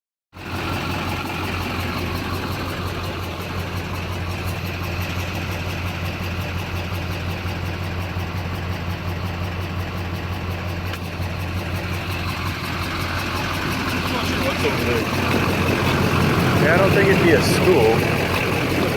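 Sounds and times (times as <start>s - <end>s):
diesel engine idling: 0.4s - 18.9s.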